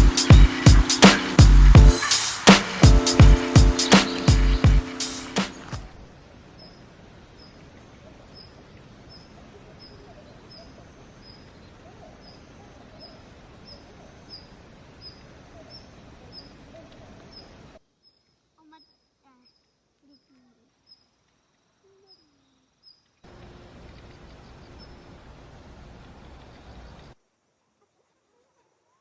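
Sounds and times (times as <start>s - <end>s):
outdoor hiss: 0.0s - 10.2s, 12.4s - 29.0s.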